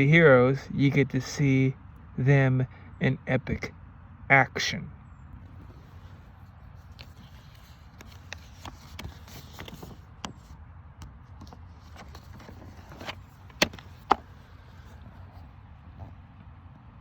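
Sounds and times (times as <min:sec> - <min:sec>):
sharp clicks and knocks: 0:08.0 - 0:14.3.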